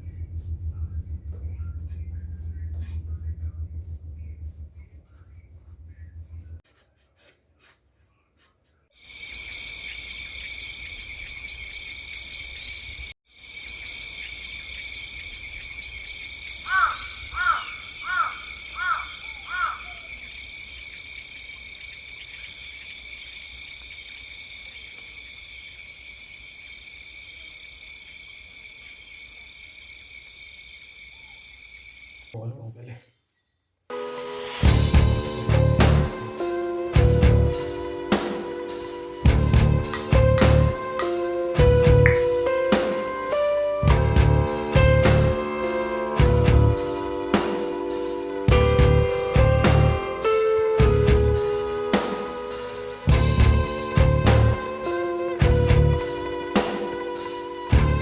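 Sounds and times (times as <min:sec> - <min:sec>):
insects chirping: 0:09.0 - 0:33.9
bird calling: 0:14.0 - 0:23.0.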